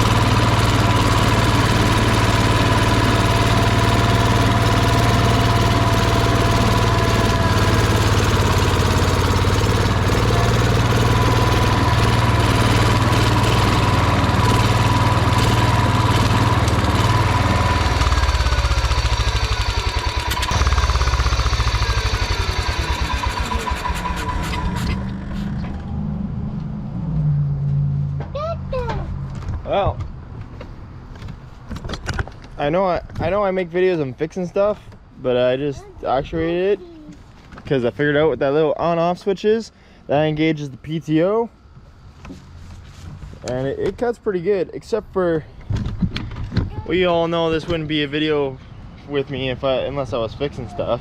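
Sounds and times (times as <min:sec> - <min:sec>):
riding mower engine running: 0:00.0 - 0:27.0, 0:45.0 - 0:51.0.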